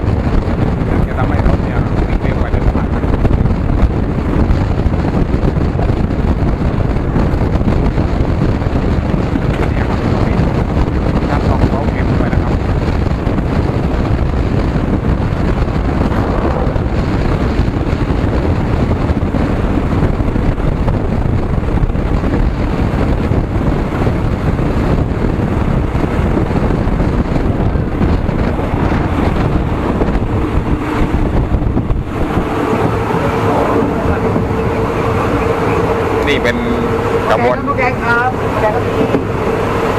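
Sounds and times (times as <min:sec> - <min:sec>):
steady hum: 0:00.0 - 0:39.9
vehicle rumble: 0:00.0 - 0:39.9
wind buffeting microphone: 0:00.0 - 0:39.9.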